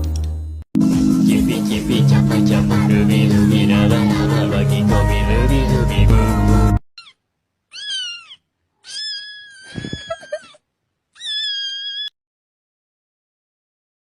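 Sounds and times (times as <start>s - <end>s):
cat meowing: 7.0s - 10.6s, 11.2s - 12.1s.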